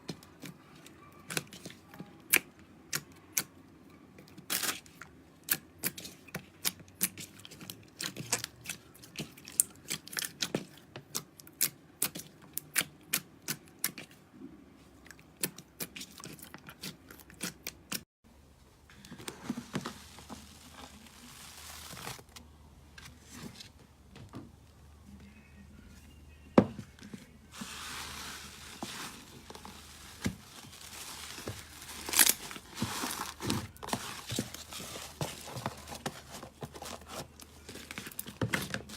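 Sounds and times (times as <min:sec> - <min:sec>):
slime crinkling and squishing: 0:04.3 - 0:14.2, 0:15.4 - 0:18.0, 0:19.0 - 0:22.4, 0:27.5 - 0:38.9.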